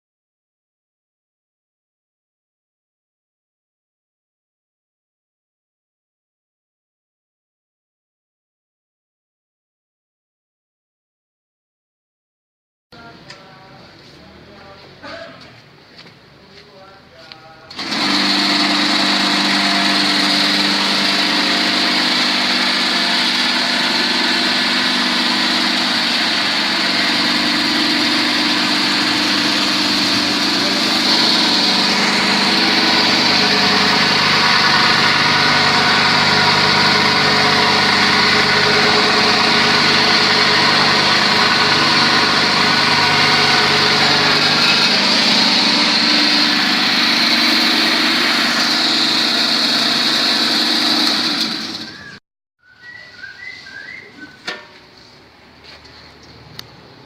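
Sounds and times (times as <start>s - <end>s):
grinding machine whining: 17.7s - 54.6s.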